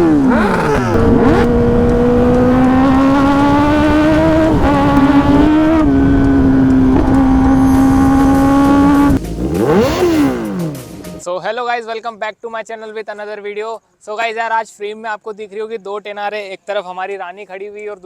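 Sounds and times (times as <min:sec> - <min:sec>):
motorcycle engine revving: 0:00.0 - 0:11.2.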